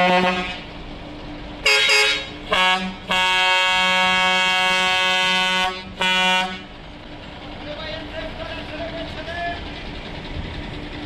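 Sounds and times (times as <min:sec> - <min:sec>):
coach air horn blasts: 0:00.0 - 0:00.6, 0:01.6 - 0:06.7.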